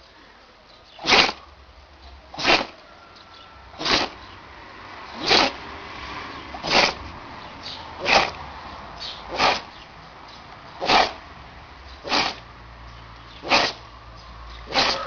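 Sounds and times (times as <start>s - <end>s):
animal sneezing: 1.0s - 1.5s, 2.3s - 2.8s, 3.8s - 4.3s, 5.1s - 5.6s, 6.5s - 7.1s, 8.0s - 8.4s, 9.2s - 9.8s, 10.8s - 11.2s, 12.0s - 12.5s, 13.4s - 13.8s, 14.7s - 15.0s.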